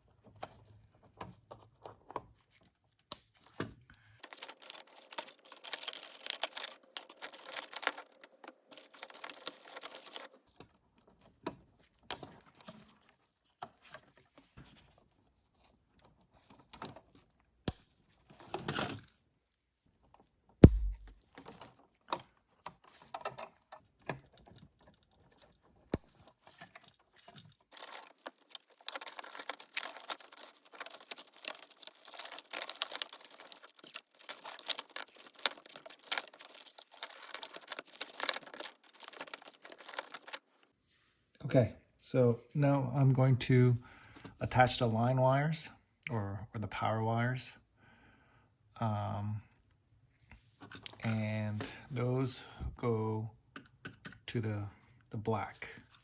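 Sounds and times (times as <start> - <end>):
rustling and scraping of wires: 0.0 - 17.3, 21.3 - 41.3
wire connectors clicking: 4.2 - 10.3, 20.6 - 21.1, 27.8 - 40.4
sharp knock: 20.6 - 21.1.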